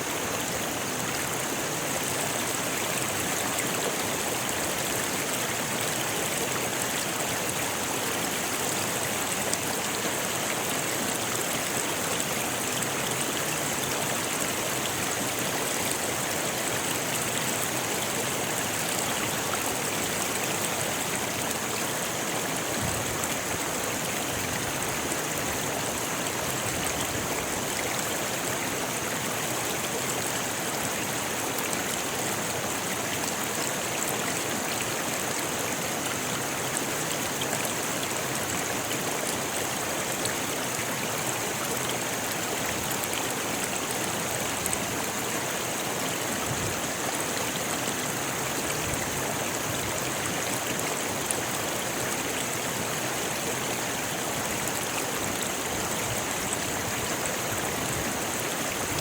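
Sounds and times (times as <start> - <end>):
water rushing over stones: 0.0 - 59.0.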